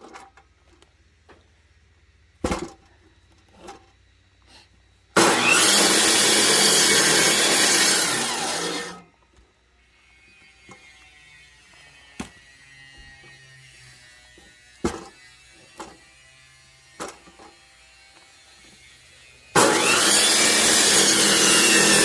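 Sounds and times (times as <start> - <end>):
faint mechanical hum: 0.0 - 5.2.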